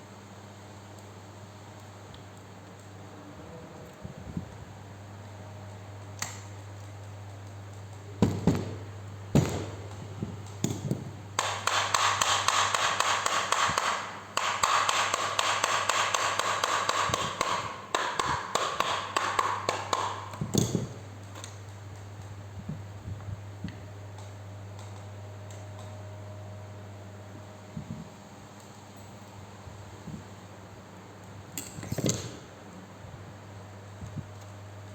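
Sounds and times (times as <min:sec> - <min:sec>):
steady low hum: 0:00.0 - 0:34.9
rapid tapping with hand tools: 0:08.2 - 0:21.5
sharp knocks on metal: 0:10.6 - 0:21.0.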